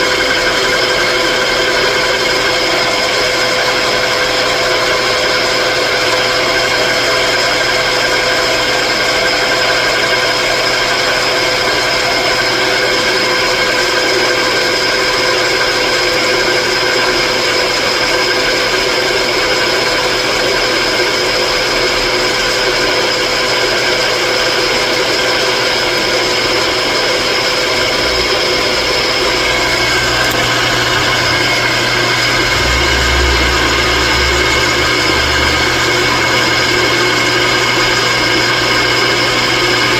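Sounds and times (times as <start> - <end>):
power tool motor whining: 27.8 - 39.9
low rumble: 29.5 - 38.4.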